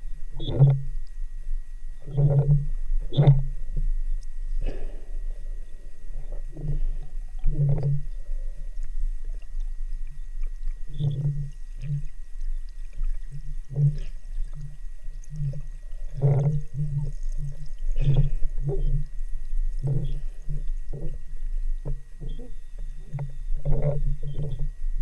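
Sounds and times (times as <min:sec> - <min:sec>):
low hum: 0:00.0 - 0:25.0
muffled underwater thuds: 0:06.2 - 0:21.2, 0:21.8 - 0:24.7.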